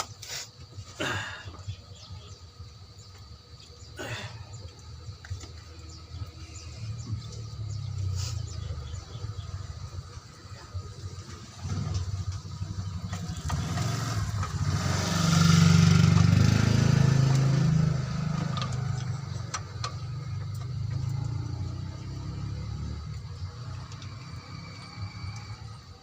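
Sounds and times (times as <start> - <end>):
engine rumbling: 0.0 - 26.0.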